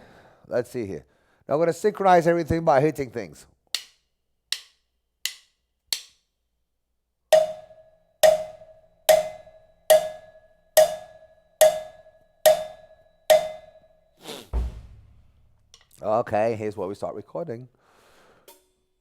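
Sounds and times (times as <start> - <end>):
percussion strikes with ringing tone: 7.4 - 14.0.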